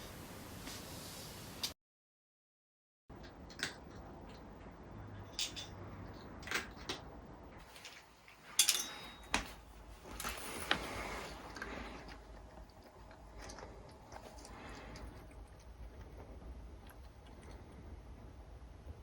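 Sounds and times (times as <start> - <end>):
cat crunching dry kibble: 10.7 - 17.9.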